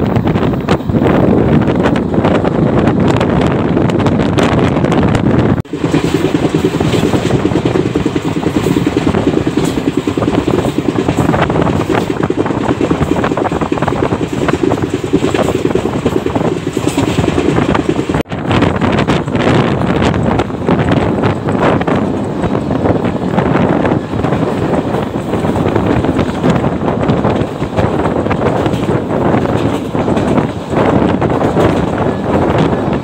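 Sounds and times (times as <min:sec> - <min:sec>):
moving train rumble: 0:00.0 - 0:33.0
wind buffeting microphone: 0:00.0 - 0:33.0.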